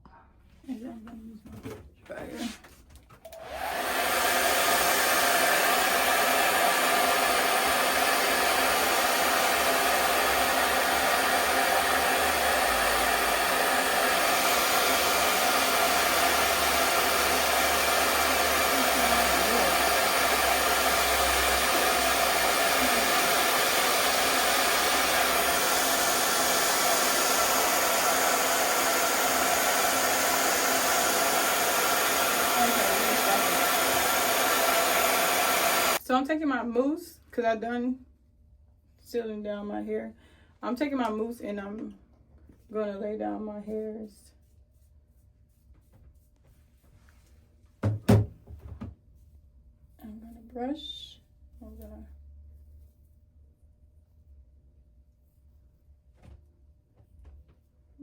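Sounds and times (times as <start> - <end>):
hair dryer blowing: 3.2 - 36.0.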